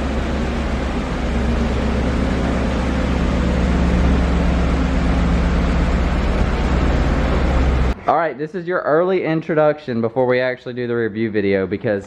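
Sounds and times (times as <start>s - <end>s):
car engine idling: 0.0s - 8.0s.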